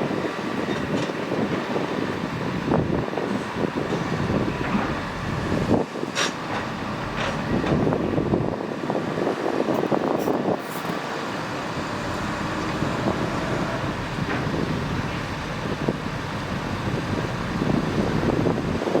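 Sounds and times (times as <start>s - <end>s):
heavy diesel machinery running: 0.0s - 19.0s.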